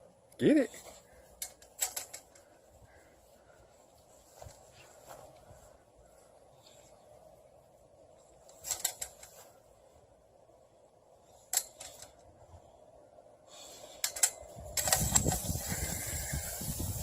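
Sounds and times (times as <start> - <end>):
water fountain spraying hiss: 14.8 - 17.0.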